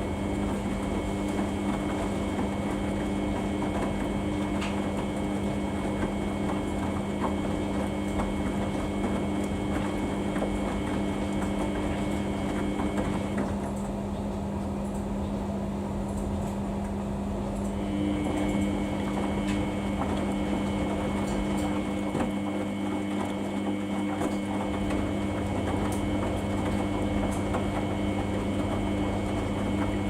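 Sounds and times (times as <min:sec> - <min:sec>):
washing machine hum: 0:00.0 - 0:30.0.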